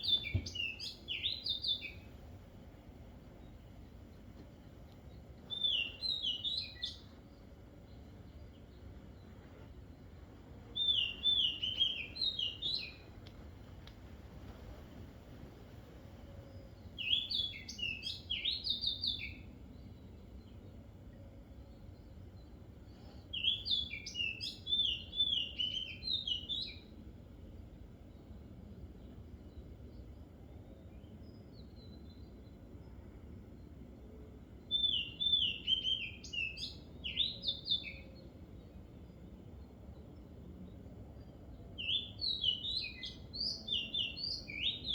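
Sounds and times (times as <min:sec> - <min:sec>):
faint outdoor hum: 0:00.0 - 0:44.9
songbird singing: 0:00.0 - 0:44.9.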